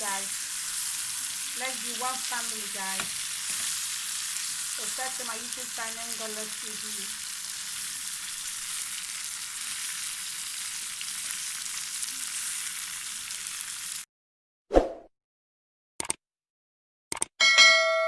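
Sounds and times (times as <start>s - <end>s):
food sizzling in a pan: 0.0s - 14.1s.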